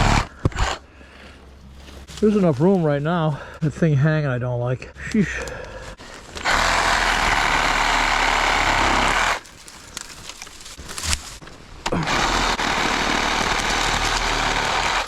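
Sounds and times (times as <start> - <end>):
reciprocating saw cutting wood: 6.4 - 15.0.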